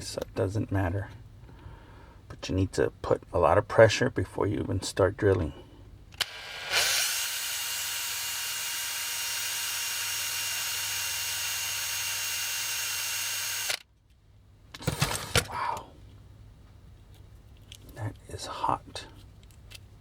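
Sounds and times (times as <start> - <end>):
electric drill whining: 6.2 - 13.8.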